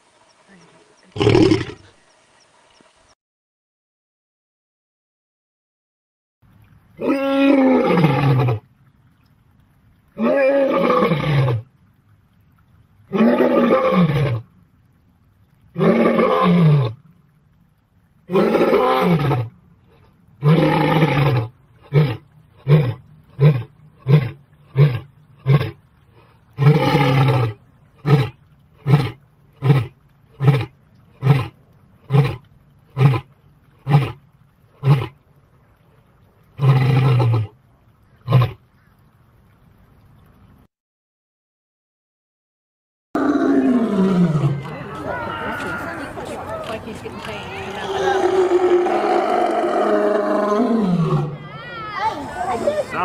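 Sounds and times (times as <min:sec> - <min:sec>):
lion roaring: 0:01.2 - 0:01.9, 0:20.4 - 0:25.8, 0:26.6 - 0:32.4, 0:43.2 - 0:44.7, 0:47.7 - 0:51.5.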